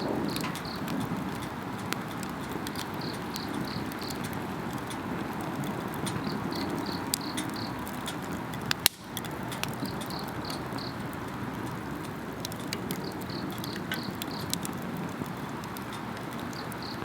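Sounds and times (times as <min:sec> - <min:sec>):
insects chirping: 0:00.0 - 0:01.0, 0:02.9 - 0:04.4, 0:06.2 - 0:07.8, 0:09.8 - 0:11.1, 0:13.0 - 0:14.6, 0:16.5 - 0:17.0
campfire crackling and popping: 0:00.0 - 0:17.0.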